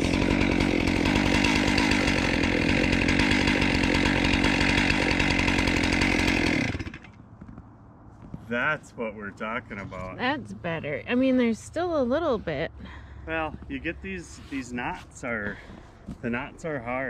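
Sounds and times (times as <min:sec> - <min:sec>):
chainsaw running at high speed: 0:00.0 - 0:07.2.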